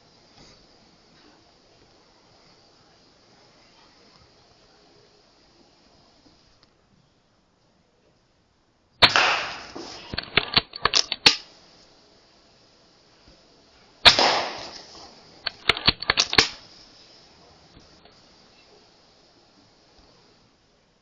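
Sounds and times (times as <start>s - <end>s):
metallic clicks: 9.0s - 11.5s, 15.4s - 16.6s
air rifle shots: 9.0s - 11.6s, 14.0s - 16.6s.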